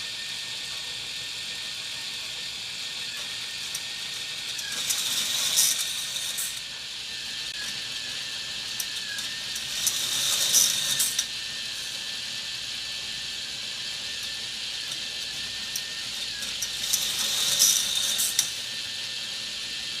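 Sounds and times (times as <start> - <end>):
toy coaster cars rushing on track: 0.0 - 20.0
motorized lift clattering: 3.0 - 12.3, 13.9 - 19.2.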